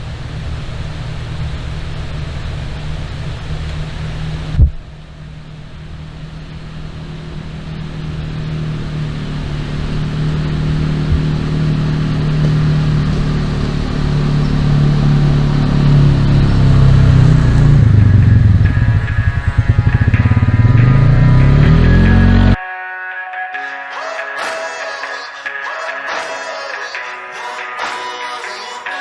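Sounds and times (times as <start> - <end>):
vehicle engine running: 0.0 - 22.6.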